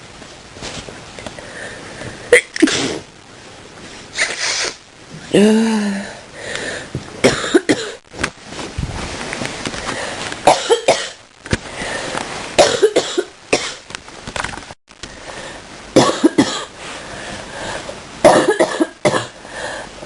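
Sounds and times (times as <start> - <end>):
person coughing: 7.2 - 8.0, 10.5 - 11.2, 12.6 - 13.8, 16.0 - 16.7, 18.2 - 19.4.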